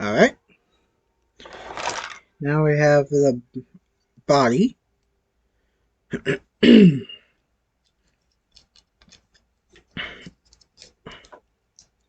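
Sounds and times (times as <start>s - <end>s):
plastic model pieces clicking: 7.8s - 9.5s, 10.4s - 12.0s.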